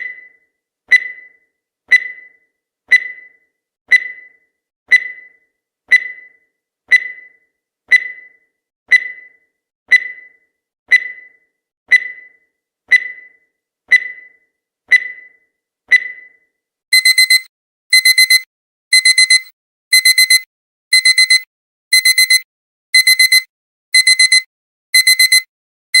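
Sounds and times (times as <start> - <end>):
digital alarm clock beeping: 0.0 - 26.0
countdown timer beeps: 16.9 - 22.4, 23.0 - 26.0.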